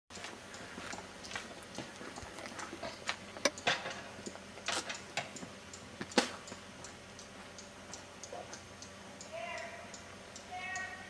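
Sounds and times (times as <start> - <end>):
clock ticking: 6.4 - 11.0.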